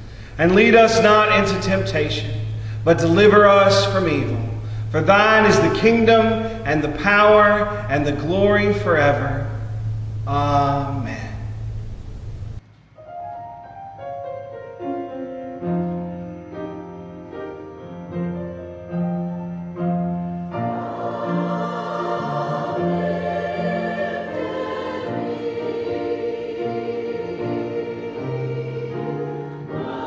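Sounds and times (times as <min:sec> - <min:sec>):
choir singing: 0:00.0 - 0:12.6, 0:20.6 - 0:30.0
keyboard playing held chords: 0:00.0 - 0:12.6.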